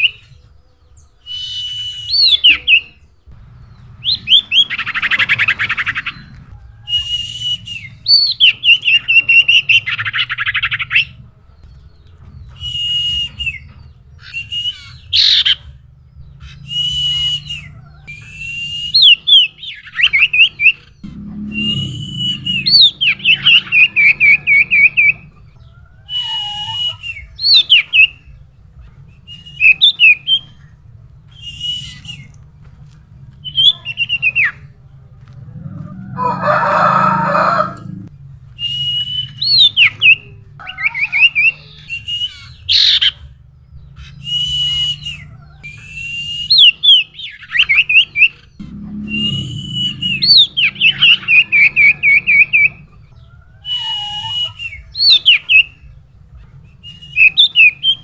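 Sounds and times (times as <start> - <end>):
bird whistling song with trills: 0.0 - 3.0, 3.6 - 11.2, 12.4 - 15.6, 16.4 - 28.3, 29.2 - 32.4, 35.5 - 43.2, 43.9 - 55.9, 56.6 - 58.0
harsh buzzy bird call: 35.6 - 38.1.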